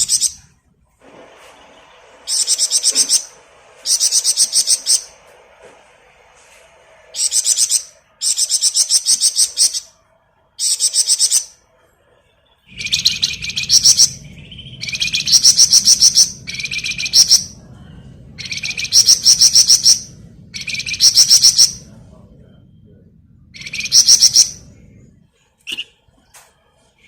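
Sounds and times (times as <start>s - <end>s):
songbird trilling: 0.0s - 0.4s, 2.3s - 5.1s, 12.7s - 17.6s, 18.4s - 21.9s, 23.6s - 24.7s
low background hum: 0.0s - 27.0s.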